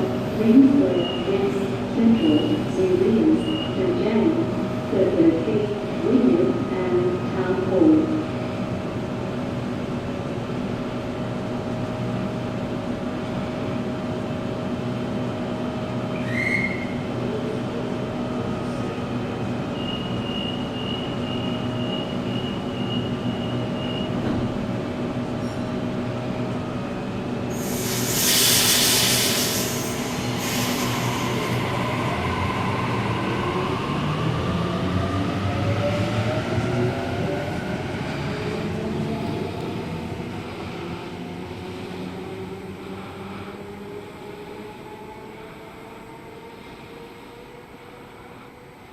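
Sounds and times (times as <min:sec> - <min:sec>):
air hiss: 0:27.5 - 0:31.4.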